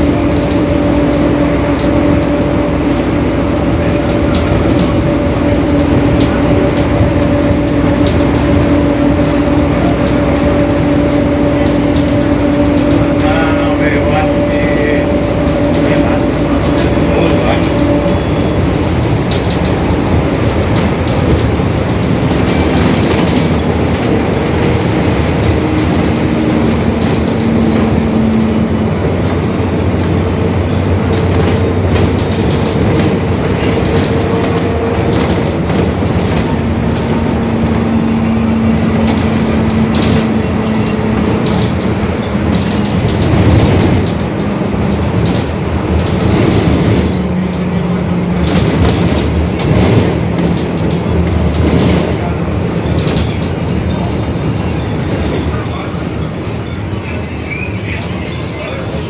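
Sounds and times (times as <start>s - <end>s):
bus engine rumbling: 0.0s - 59.0s.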